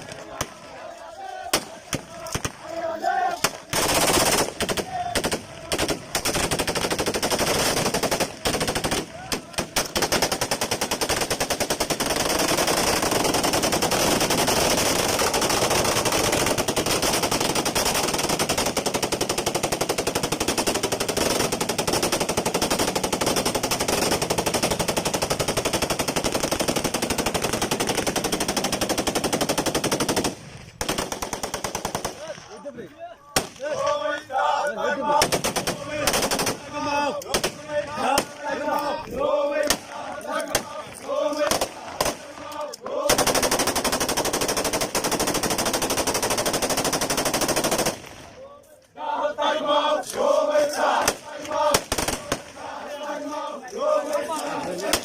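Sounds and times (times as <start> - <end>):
automatic gunfire: 3.4 - 32.4, 35.1 - 38.5, 40.5 - 48.3, 51.0 - 52.6.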